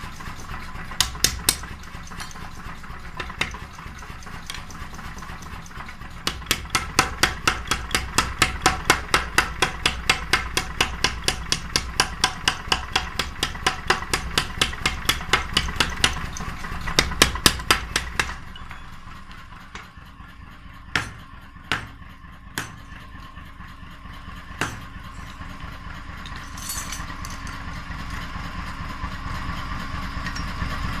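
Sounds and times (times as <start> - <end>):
low steady hum: 12.6 - 29.3.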